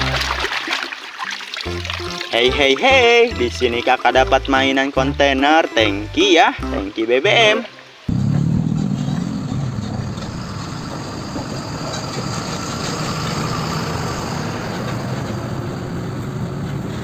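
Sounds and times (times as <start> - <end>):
truck engine rumbling: 8.1 - 17.0.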